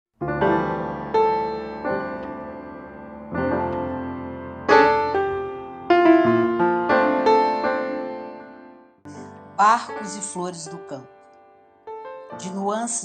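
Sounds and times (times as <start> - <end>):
gentle solo piano: 0.2 - 13.0.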